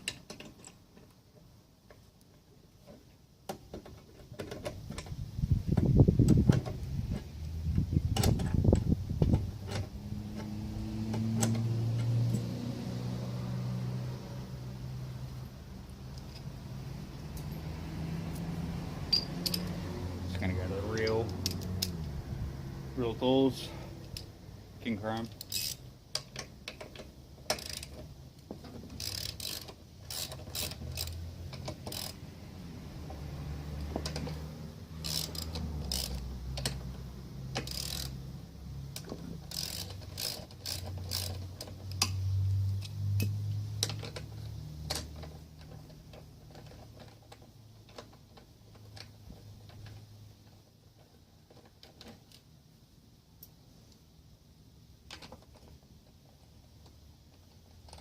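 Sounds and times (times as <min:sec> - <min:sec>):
ratchet wrench clicking: 0:19.1 - 0:19.7, 0:25.3 - 0:26.9, 0:27.5 - 0:28.0, 0:28.9 - 0:32.2, 0:35.0 - 0:36.8, 0:37.5 - 0:38.2, 0:38.9 - 0:42.2.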